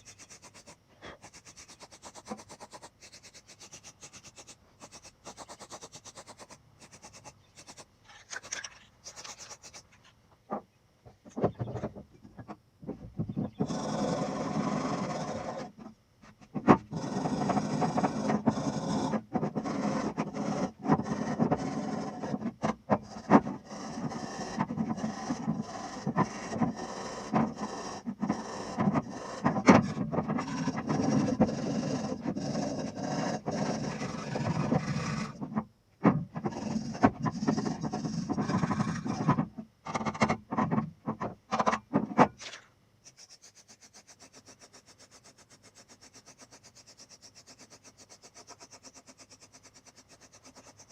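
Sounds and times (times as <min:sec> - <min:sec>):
hand scrubbing metal pulley: 0:43.1 - 0:50.9.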